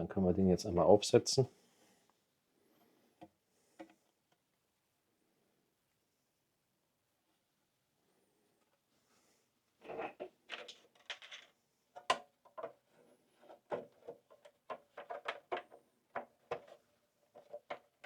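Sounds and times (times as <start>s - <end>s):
knocks clatters and scrapes of parts: 9.8s - 18.0s.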